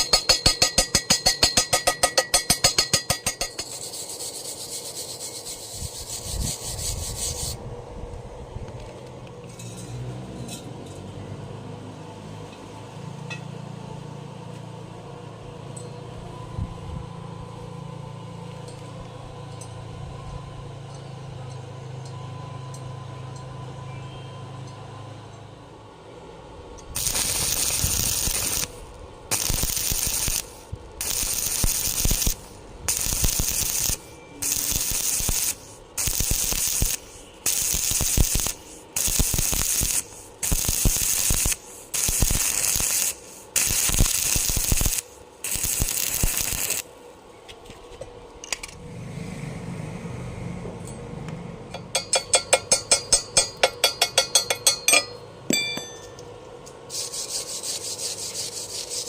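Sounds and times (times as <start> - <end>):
welding arc crackling and hissing: 2.1 - 7.6, 27.0 - 47.0, 56.9 - 59.0
low hum: 45.3 - 56.8.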